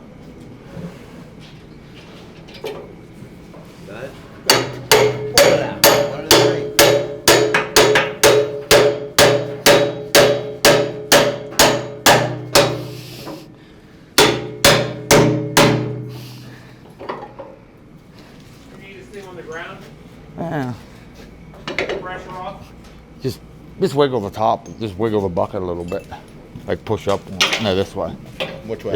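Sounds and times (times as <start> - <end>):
hammer ringing on steel: 4.5 - 13.0, 14.2 - 16.2.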